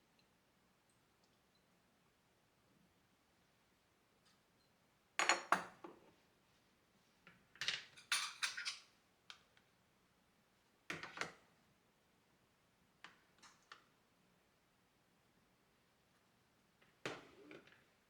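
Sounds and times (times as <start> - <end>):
dishes and utensils clinking: 7.8 - 8.8.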